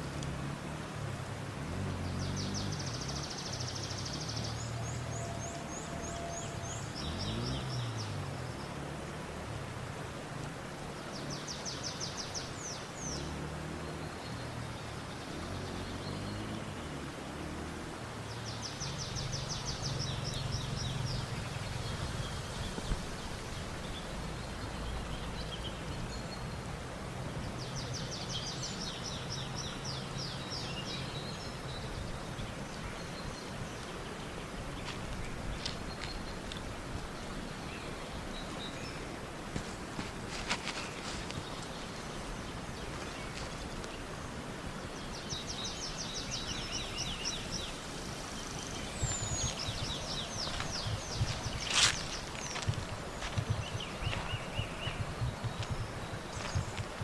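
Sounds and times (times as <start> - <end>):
outdoor background hiss: 0.0 - 57.0.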